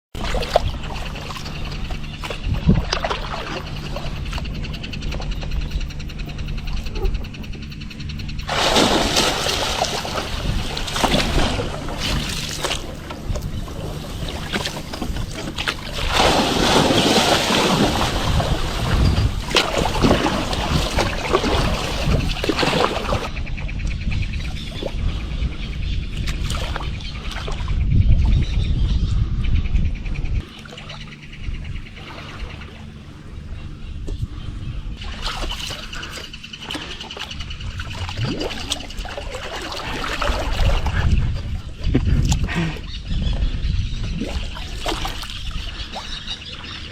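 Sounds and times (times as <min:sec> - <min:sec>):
water splashing and sloshing: 0:00.1 - 0:27.9, 0:30.4 - 0:46.9
wind rumbling on microphone: 0:00.1 - 0:46.9.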